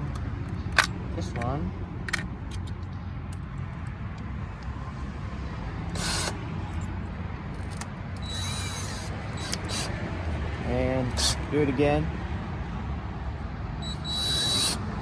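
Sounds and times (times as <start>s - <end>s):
power drill boring: 5.9s - 6.4s, 8.2s - 10.1s, 11.2s - 11.5s, 13.8s - 15.0s.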